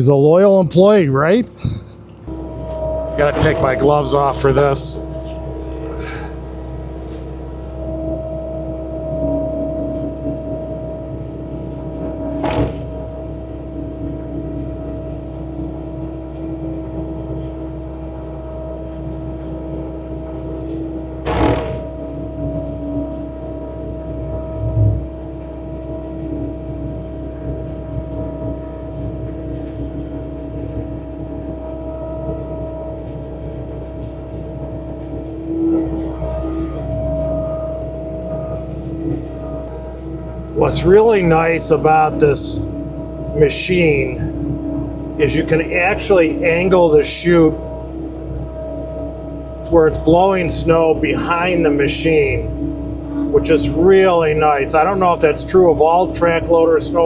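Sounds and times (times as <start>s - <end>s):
track loader snow blower drone: 0.0s - 57.0s
diesel engine and snowblower running: 0.4s - 7.8s, 38.2s - 44.3s, 45.1s - 48.0s, 49.5s - 52.6s, 53.2s - 57.0s.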